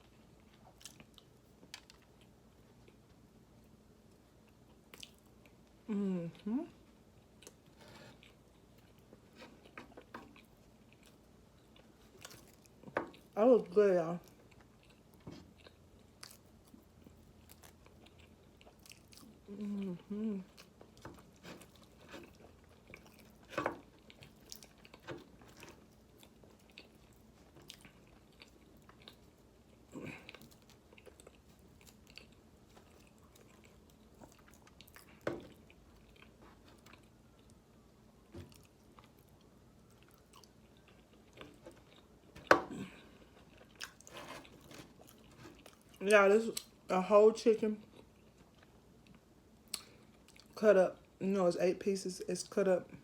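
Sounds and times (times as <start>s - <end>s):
chewing and biting fried chicken: 14.3s - 37.6s.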